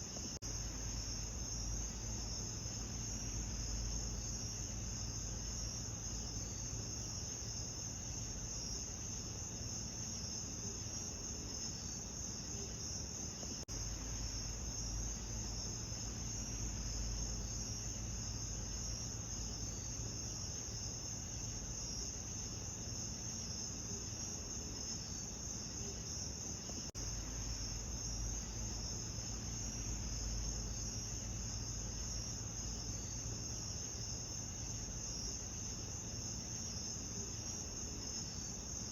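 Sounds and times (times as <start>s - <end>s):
crickets trilling: 0.0s - 38.9s.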